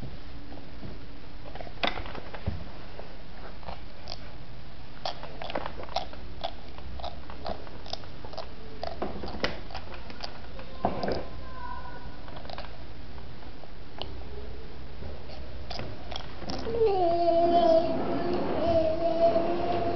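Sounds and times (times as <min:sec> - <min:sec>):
steady background hiss: 0:00.0 - 0:19.9
teeth grinding clicks: 0:03.6 - 0:04.3, 0:05.0 - 0:10.4, 0:12.4 - 0:12.7, 0:15.7 - 0:16.7.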